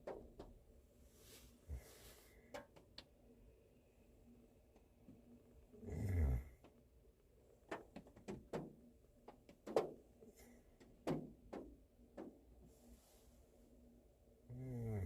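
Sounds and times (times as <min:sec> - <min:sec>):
raindrops tapping on car roof: 0:00.0 - 0:00.6, 0:07.6 - 0:10.2, 0:10.8 - 0:12.5.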